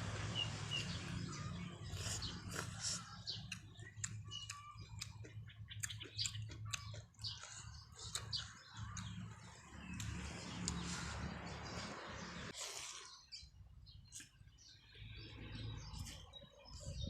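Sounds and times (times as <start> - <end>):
small birds chirping: 0.0 - 17.0
chewing and mouth clicks: 1.9 - 11.2.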